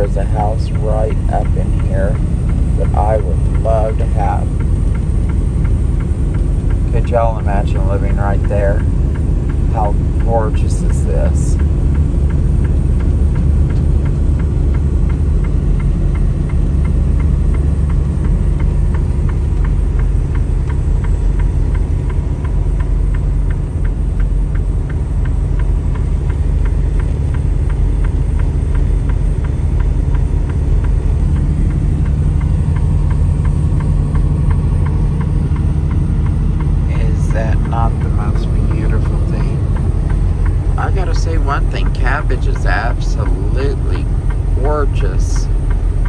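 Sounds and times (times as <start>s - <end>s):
chained tyres ticking: 0.0s - 46.0s
truck engine and road rumble: 0.0s - 46.0s.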